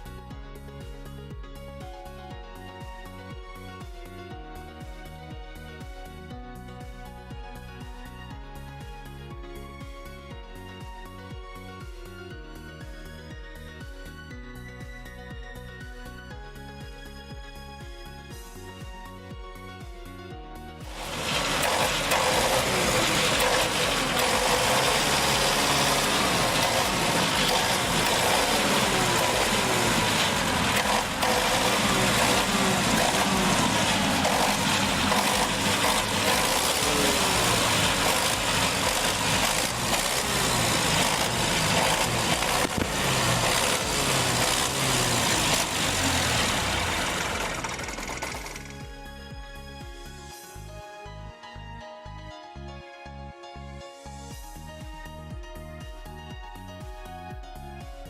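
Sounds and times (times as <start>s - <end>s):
diesel generator running: 20.8s - 49.2s.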